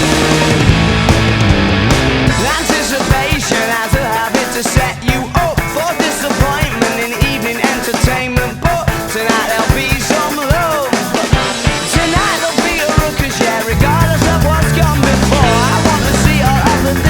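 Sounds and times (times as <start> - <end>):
heavy low bass: 0.0 - 3.3, 13.7 - 17.0
steady drum beat: 0.0 - 17.0.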